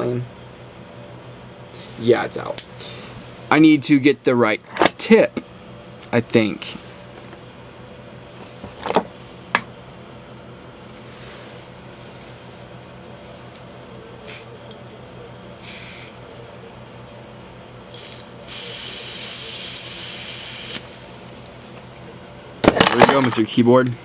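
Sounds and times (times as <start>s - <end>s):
gas can hissing: 15.6s - 16.1s, 17.9s - 20.9s.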